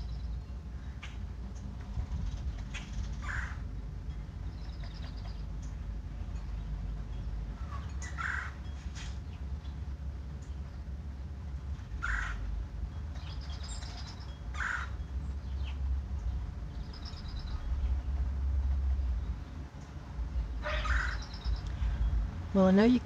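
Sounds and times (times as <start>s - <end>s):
low rumble: 0.0s - 23.0s
woodpecker harsh calls: 3.2s - 3.6s, 7.7s - 8.6s, 12.0s - 12.5s, 13.3s - 15.7s, 20.6s - 21.8s.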